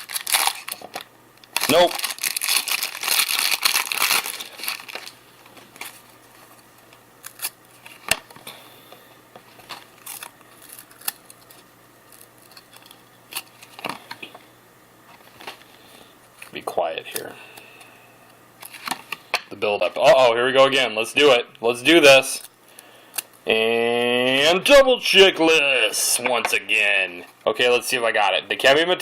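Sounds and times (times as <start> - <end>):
card pack wrapper crinkling and tearing: 0.0 - 6.6, 7.2 - 8.2, 9.5 - 14.2, 18.6 - 19.2.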